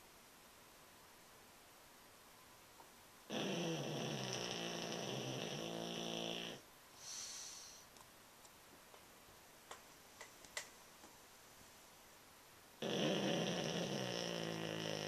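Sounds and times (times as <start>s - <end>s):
pet snoring: 3.3s - 6.6s, 12.8s - 15.0s
soft hissing breath: 3.6s - 8.1s.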